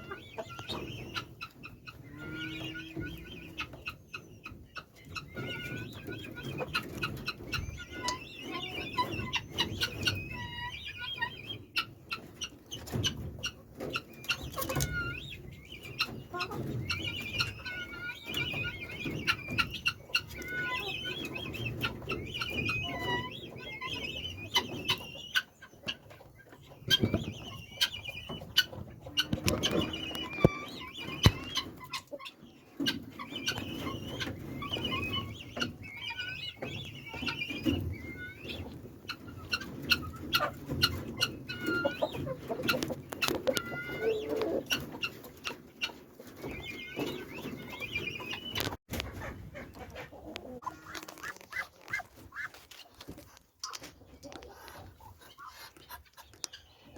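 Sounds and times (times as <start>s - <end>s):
poultry clucking: 0.0s - 56.9s
sharp clicks and knocks: 28.6s - 31.7s.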